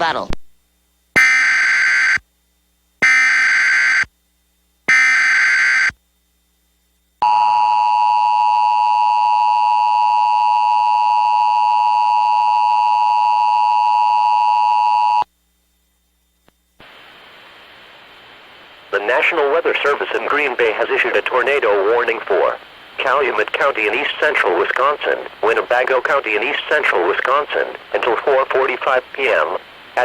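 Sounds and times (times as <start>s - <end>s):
two-tone alert buzz: 1.2s - 2.2s, 3.0s - 4.1s, 4.9s - 5.9s.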